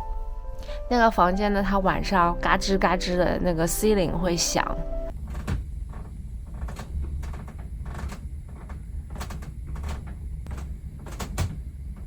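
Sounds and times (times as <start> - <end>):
steady low rumble: 0.0 - 12.0
ceiling panels creaking and ticking: 5.1 - 12.0.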